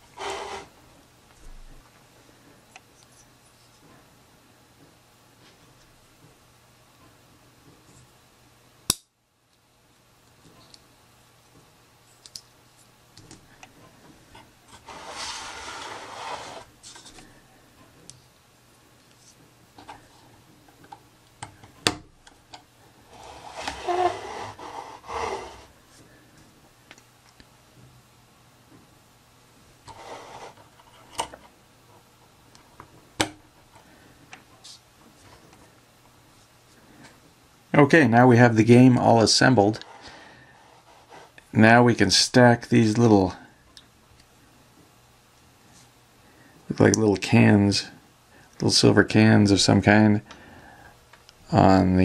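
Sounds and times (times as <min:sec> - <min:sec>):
loud scraping noise: 0:00.0 - 0:00.7, 0:14.8 - 0:16.7, 0:23.1 - 0:25.7, 0:29.9 - 0:30.6.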